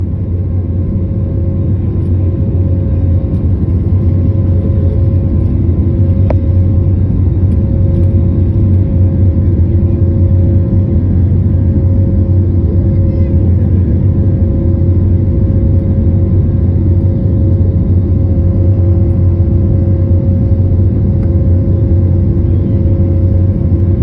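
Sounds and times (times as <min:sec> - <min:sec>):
airplane cabin drone: 0:00.0 - 0:24.0.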